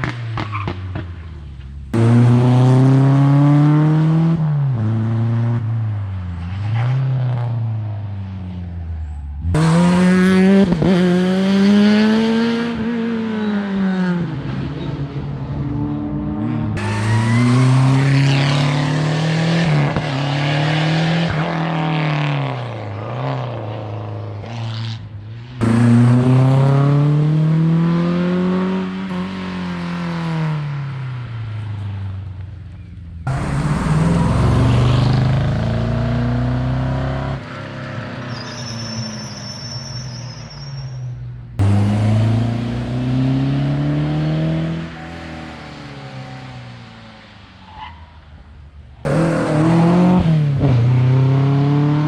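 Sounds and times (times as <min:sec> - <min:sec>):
rally car engines revving: 0:00.0 - 0:07.9, 0:09.0 - 0:31.4, 0:33.2 - 0:39.4, 0:41.5 - 0:52.0.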